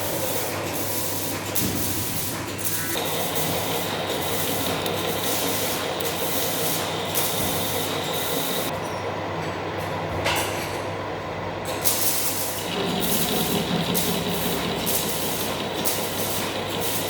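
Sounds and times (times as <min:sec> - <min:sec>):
metal lathe humming: 0:03.0 - 0:08.7, 0:12.5 - 0:17.0
thin high whine: 0:03.0 - 0:08.7, 0:12.5 - 0:17.0.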